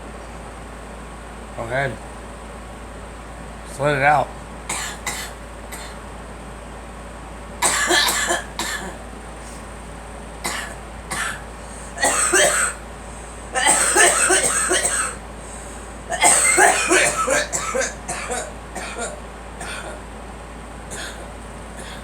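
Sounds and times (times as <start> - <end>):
girl coughing: 4.7 - 6.0, 7.6 - 9.0, 10.4 - 12.8, 13.6 - 15.2, 16.1 - 20.0, 20.9 - 22.0.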